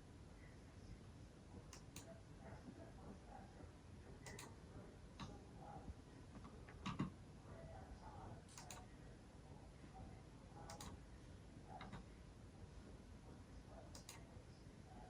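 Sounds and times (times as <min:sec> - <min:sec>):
faint clicks: 0:04.2 - 0:04.5, 0:08.6 - 0:08.9, 0:13.9 - 0:14.2.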